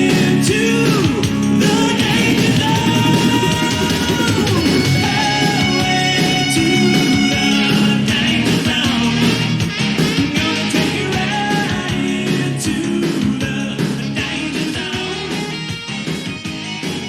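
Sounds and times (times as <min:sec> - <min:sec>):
person singing: 0:00.0 - 0:15.8
drums: 0:00.0 - 0:17.0
electric guitar: 0:00.0 - 0:17.0
rock music: 0:00.0 - 0:17.0.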